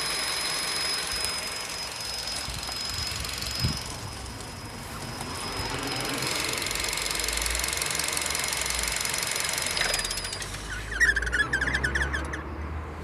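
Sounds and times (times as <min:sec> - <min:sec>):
high-pitched engine squeal: 0:04.6 - 0:06.9, 0:09.7 - 0:12.8
rapid chirps: 0:05.3 - 0:12.5.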